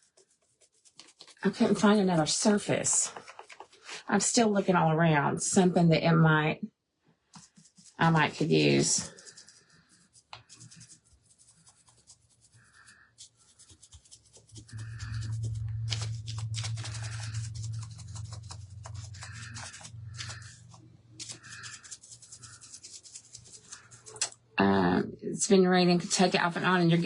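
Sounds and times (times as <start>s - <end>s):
low steady hum: 11.7s - 27.0s.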